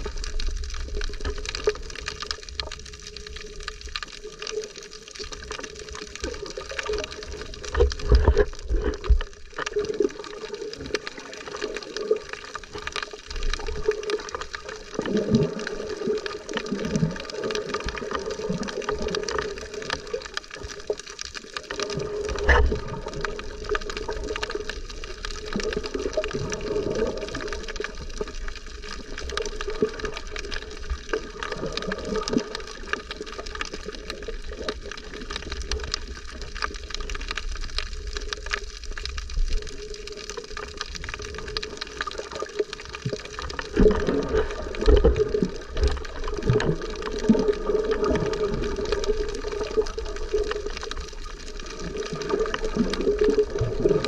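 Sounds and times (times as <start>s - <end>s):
muffled water sloshing: 6.9s - 11.7s.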